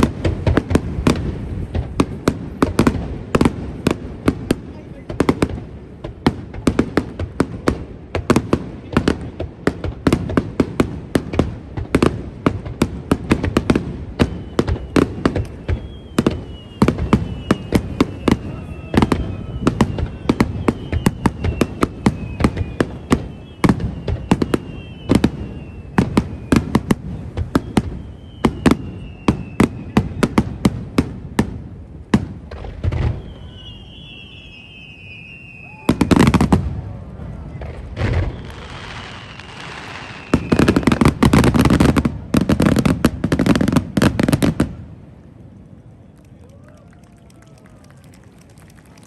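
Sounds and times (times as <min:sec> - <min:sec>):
fireworks bangs: 0:00.0 - 0:49.0
fireworks whistles falling in pitch: 0:12.7 - 0:31.1, 0:32.6 - 0:36.8, 0:37.6 - 0:44.6.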